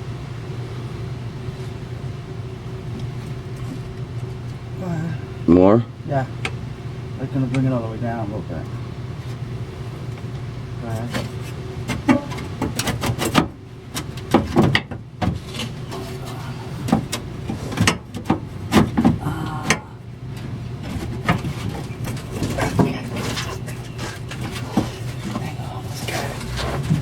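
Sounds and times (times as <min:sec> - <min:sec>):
low hum: 0:18.4 - 0:27.0.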